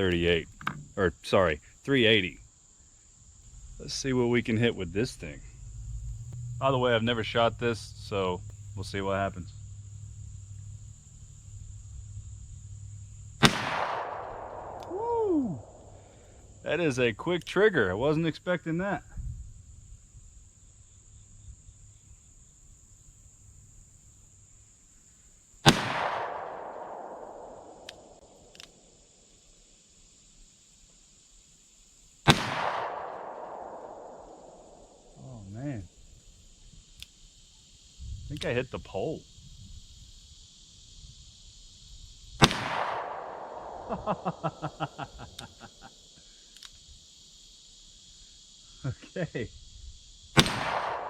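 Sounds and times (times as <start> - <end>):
faint sharp ticks: 27.8 - 28.8, 36.9 - 37.2, 45.2 - 45.8, 46.5 - 46.8.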